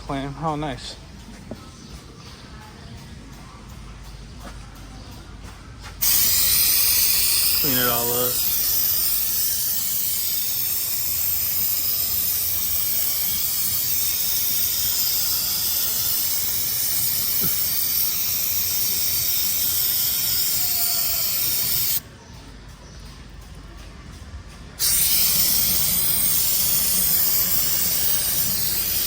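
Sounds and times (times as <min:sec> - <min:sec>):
aerosol can spraying: 0:06.0 - 0:22.0, 0:24.8 - 0:29.0.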